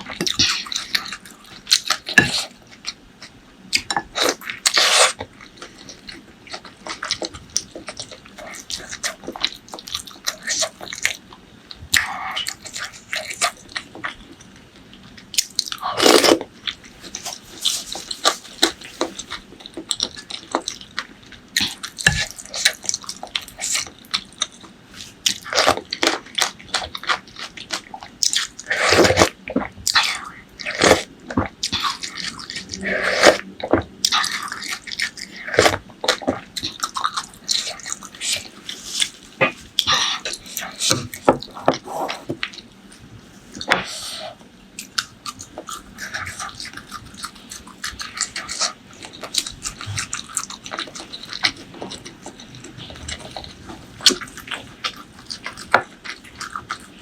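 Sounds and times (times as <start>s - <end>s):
wet chewing and biting: 15.4s - 57.0s.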